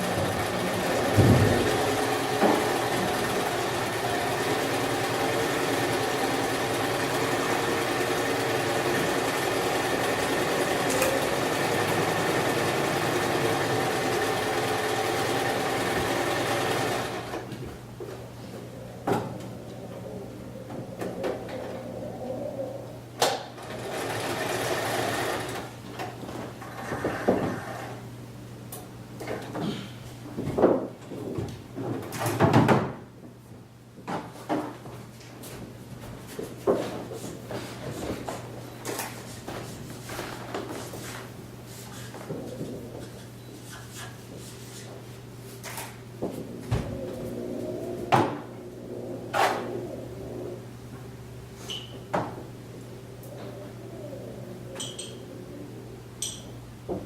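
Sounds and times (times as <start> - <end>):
electric sewing machine running: 0.0 - 17.4, 23.6 - 25.7.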